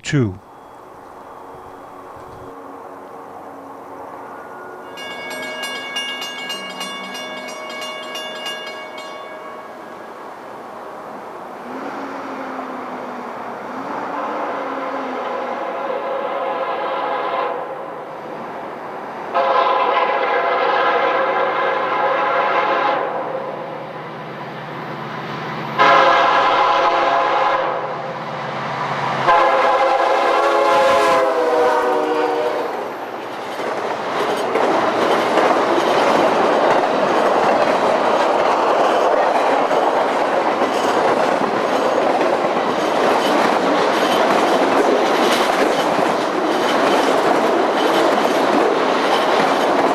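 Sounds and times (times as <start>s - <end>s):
locomotive horn blasts: 19.4s - 23.2s, 25.8s - 27.8s, 29.3s - 32.7s
train wheels clattering over rails: 32.6s - 49.9s.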